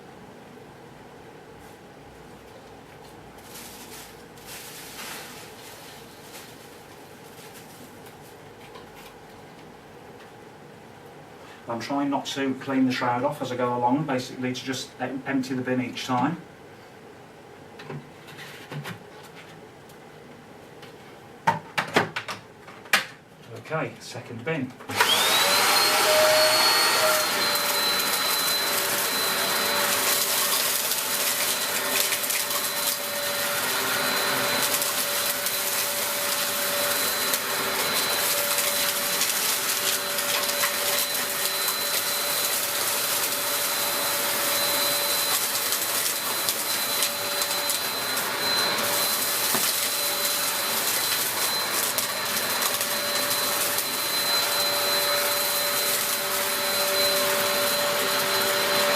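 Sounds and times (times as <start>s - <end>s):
vacuum cleaner running: 24.9s - 58.9s.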